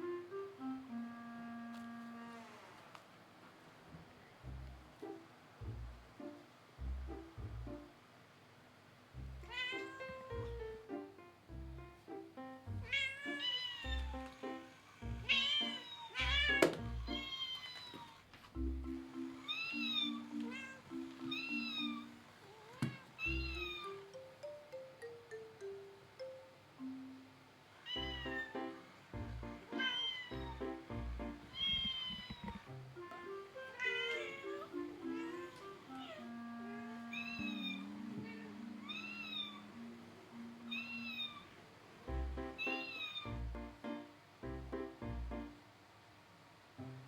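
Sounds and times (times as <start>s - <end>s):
kitten meowing: 9.4s - 10.4s, 12.8s - 14.4s, 15.1s - 18.2s, 19.4s - 23.9s, 27.8s - 28.6s, 29.7s - 30.7s, 31.5s - 32.7s, 33.6s - 39.7s, 40.7s - 41.5s, 42.6s - 43.4s.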